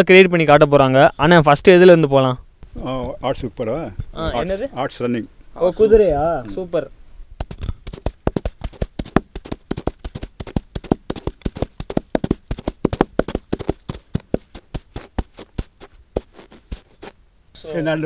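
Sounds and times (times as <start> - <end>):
galloping hoofbeats foley: 7.4 - 17.1.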